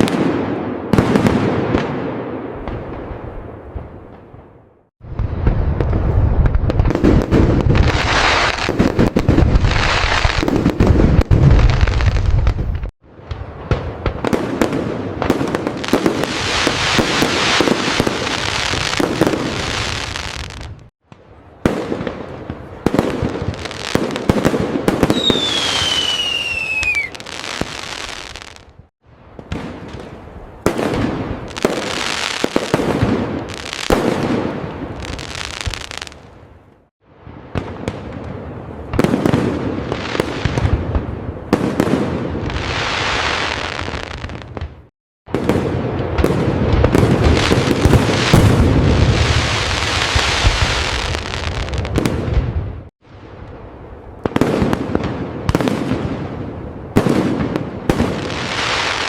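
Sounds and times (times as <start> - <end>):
fireworks bangs and crackling: 0.0 - 59.0
firework whistle falling in pitch: 25.0 - 27.2.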